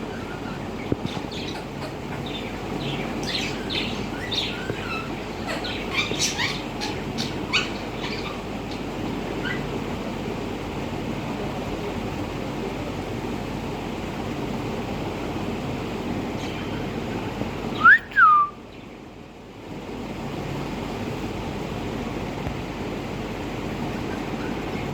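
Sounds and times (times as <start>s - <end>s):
low background noise: 0.0s - 24.9s
parrot whistling: 17.8s - 18.6s.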